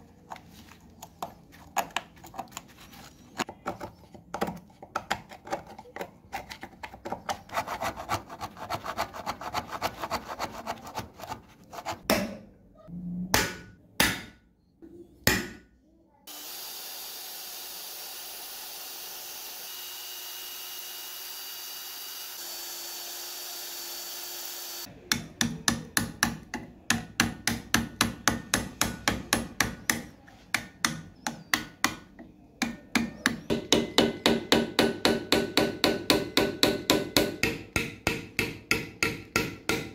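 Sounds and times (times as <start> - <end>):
hammer striking metal: 13.3 - 14.4, 33.0 - 39.9.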